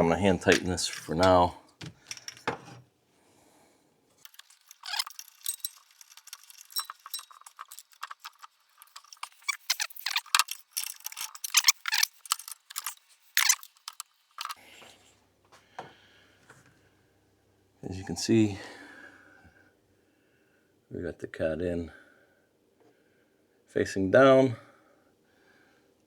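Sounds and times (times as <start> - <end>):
small metal parts clinking: 0.4 - 2.8, 4.2 - 14.6.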